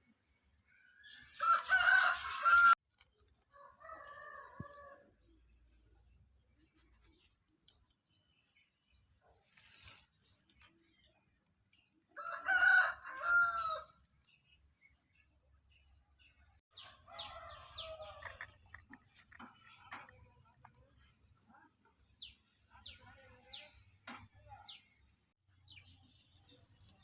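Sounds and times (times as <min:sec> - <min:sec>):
small birds chirping: 0:00.2 - 0:12.3, 0:13.2 - 0:27.0
rooster crowing: 0:01.4 - 0:02.8, 0:12.2 - 0:13.9.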